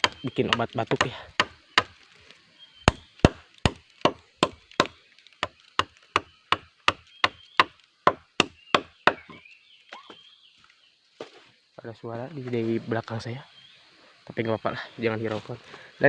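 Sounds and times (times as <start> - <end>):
blade chopping bamboo: 0.0 - 2.0, 2.8 - 9.3.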